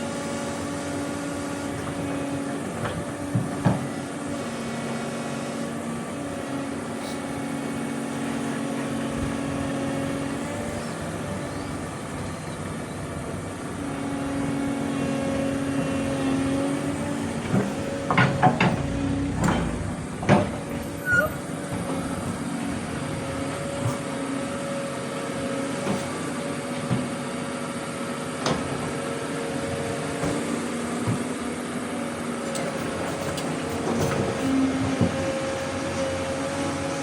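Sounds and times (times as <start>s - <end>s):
excavator engine running: 0.1s - 26.8s
loud knocks and clanks: 17.4s - 20.9s.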